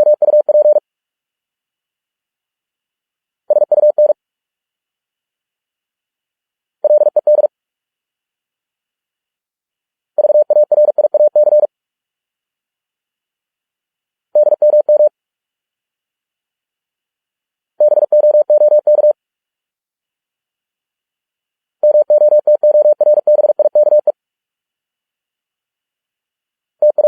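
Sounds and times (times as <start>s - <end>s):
morse code beeps: 0.0s - 0.8s, 10.2s - 11.7s, 21.9s - 24.1s.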